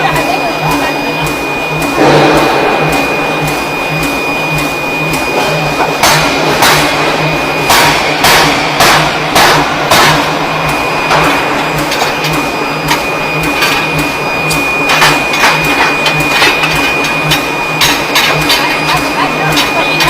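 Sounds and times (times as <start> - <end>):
forging machinery humming: 0.0 - 20.0
high machine whine: 0.0 - 20.0
metal-on-metal strikes: 1.8 - 14.0.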